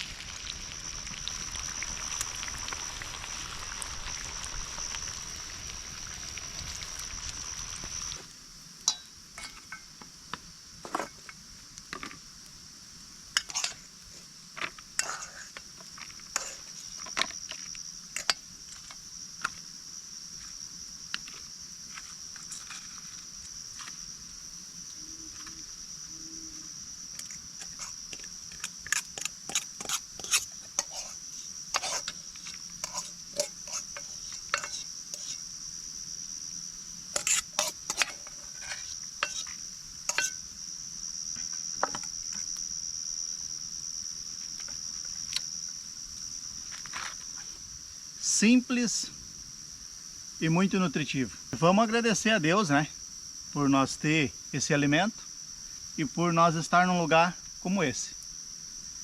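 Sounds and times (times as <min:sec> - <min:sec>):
hissing haze: 0:00.0 - 0:09.6, 0:26.3 - 0:40.6
crickets chirring: 0:00.0 - 0:59.0
metal utensil scraping a pan: 0:08.9 - 0:09.9, 0:13.4 - 0:13.8, 0:15.0 - 0:15.4, 0:16.3 - 0:17.2, 0:27.6 - 0:35.4, 0:37.1 - 0:40.4.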